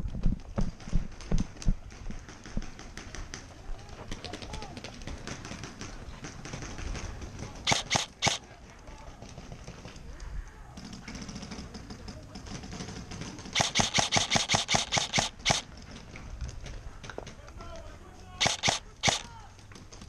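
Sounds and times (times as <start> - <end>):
airsoft gun shots: 7.7 - 8.4, 13.6 - 15.7, 18.4 - 19.3.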